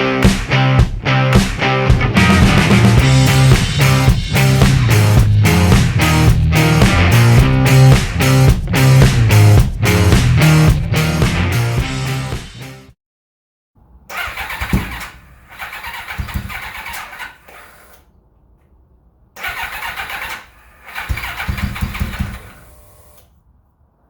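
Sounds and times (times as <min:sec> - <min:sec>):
motorcycle engine running roughly: 0:14.2 - 0:17.4, 0:19.4 - 0:23.0.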